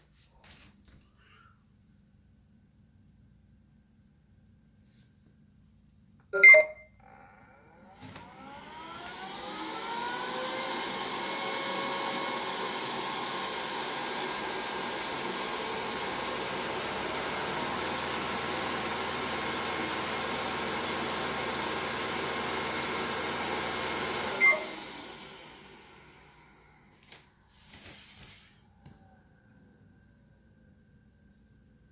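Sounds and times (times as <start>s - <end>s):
robot vacuum beep: 6.4s - 6.9s, 24.4s - 24.8s
vacuum suction motor whine: 7.7s - 27.0s.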